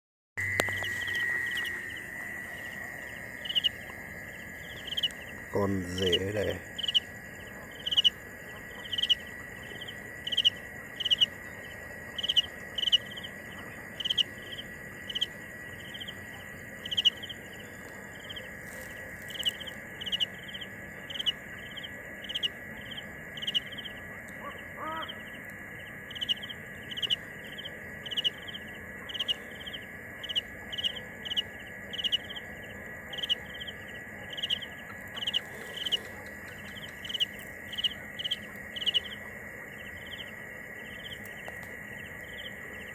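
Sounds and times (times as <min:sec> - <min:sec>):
high background tone: 0:00.4 - 0:06.6
cricket chirping: 0:00.4 - 0:42.9.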